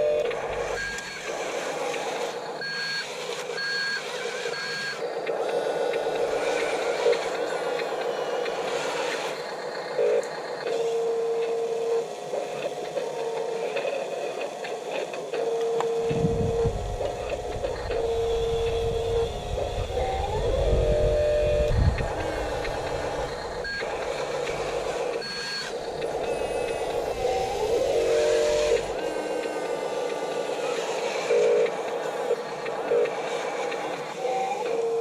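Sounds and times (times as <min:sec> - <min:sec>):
electronic reversing beeps: 0:00.0 - 0:01.3, 0:15.8 - 0:29.5
low rumble: 0:16.1 - 0:23.4.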